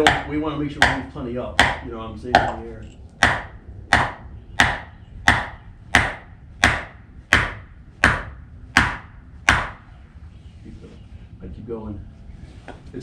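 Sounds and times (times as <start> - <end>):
hammer striking steel anchor: 0.0 - 2.6, 3.2 - 9.8.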